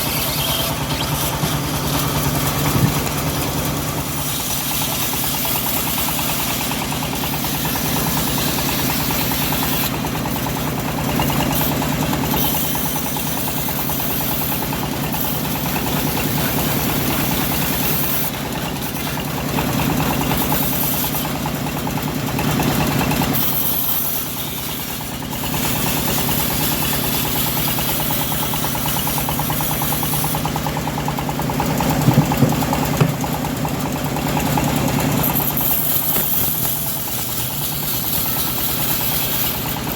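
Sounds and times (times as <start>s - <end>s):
bandsaw mill engine sawing wood: 0.0s - 39.9s
sharp knocks: 32.0s - 33.4s.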